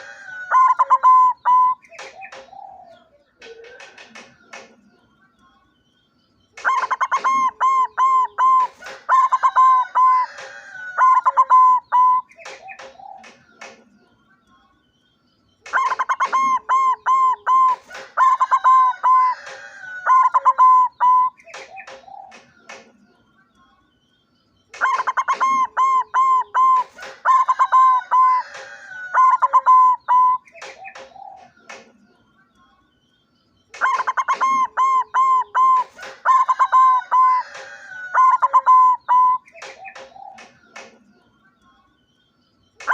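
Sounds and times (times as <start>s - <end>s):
dove cooing: 0.0s - 4.4s, 6.6s - 13.4s, 15.7s - 22.6s, 24.8s - 31.9s, 33.8s - 41.0s.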